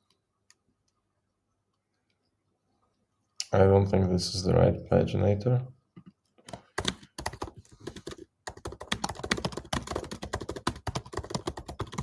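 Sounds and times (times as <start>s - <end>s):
computer keyboard typing: 6.5s - 12.0s.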